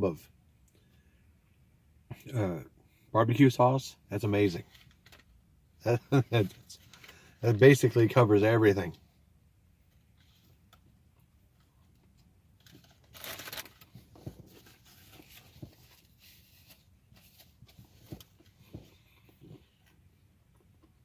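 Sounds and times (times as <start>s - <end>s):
paper wrapping rustling: 12.6s - 19.6s.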